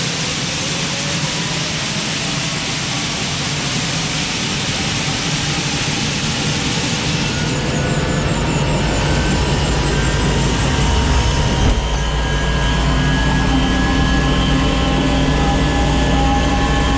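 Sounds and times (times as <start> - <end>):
low rotor rumble: 0.0 - 16.9
turbine whine and hiss: 0.0 - 16.9
steady hum: 6.8 - 16.9.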